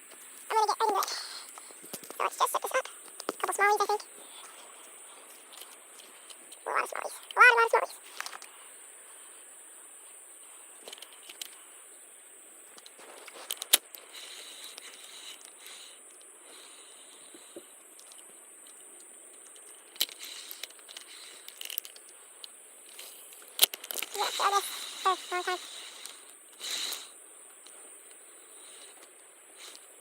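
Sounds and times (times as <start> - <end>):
background hiss: 0.0 - 30.0
fishing gear clicks and rattles: 10.8 - 11.6, 12.8 - 15.6, 17.9 - 24.7.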